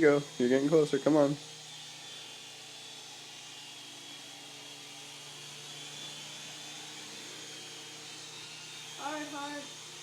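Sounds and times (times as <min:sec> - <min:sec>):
toy helicopter rotor whirring: 0:00.0 - 0:10.0.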